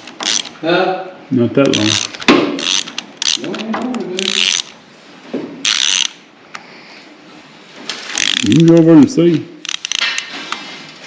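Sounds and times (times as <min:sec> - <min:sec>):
socket ratchet clicking: 0:00.0 - 0:00.6, 0:01.7 - 0:03.6, 0:04.2 - 0:04.8, 0:05.6 - 0:06.2, 0:08.1 - 0:08.8, 0:09.6 - 0:10.3.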